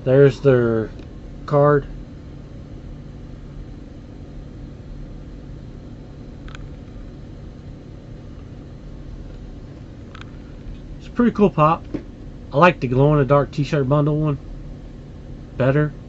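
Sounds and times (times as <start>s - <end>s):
room hum and hiss: 0.0s - 16.0s.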